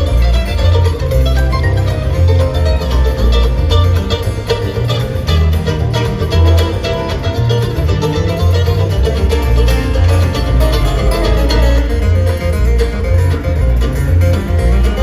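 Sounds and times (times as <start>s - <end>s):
bass line: 0.0s - 15.0s
bluegrass band playing: 0.0s - 15.0s
picked banjo: 0.0s - 15.0s.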